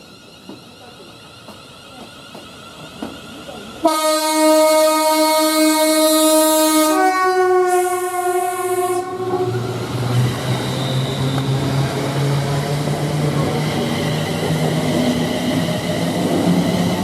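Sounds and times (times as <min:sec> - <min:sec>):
train running noise: 0:00.0 - 0:17.0
train two-tone horn: 0:03.8 - 0:09.7.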